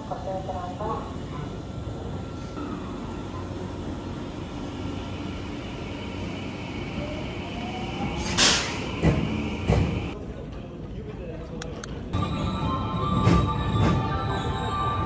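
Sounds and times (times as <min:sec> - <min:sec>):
train rumble and hum: 0:00.0 - 0:10.2, 0:11.7 - 0:15.0
compressed air hiss: 0:08.2 - 0:09.0.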